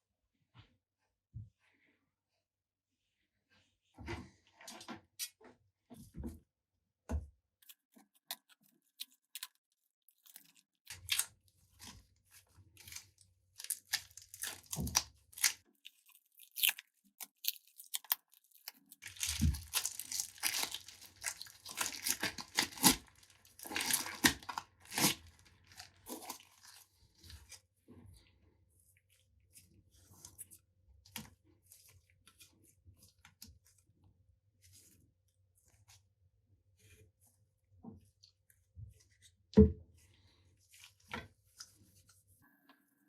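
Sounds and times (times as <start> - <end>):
tearing and crinkling handling noises: 7.6 - 27.6.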